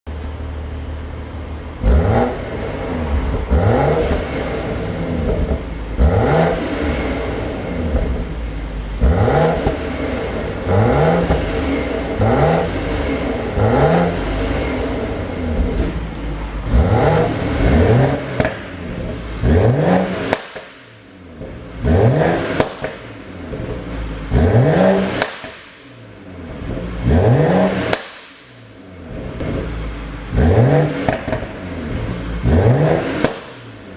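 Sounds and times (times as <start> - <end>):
car engine revving: 0.2 - 33.9
exhaust pops and crackles: 3.0 - 33.9.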